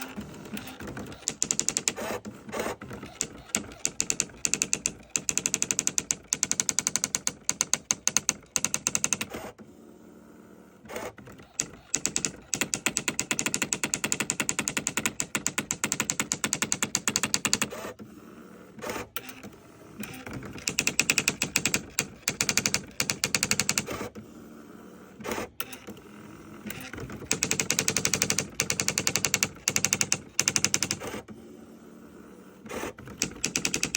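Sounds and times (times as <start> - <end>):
electronic typewriter printing rapidly: 0.0 - 9.6, 10.8 - 18.0, 20.0 - 24.2, 26.6 - 31.4, 32.7 - 33.9.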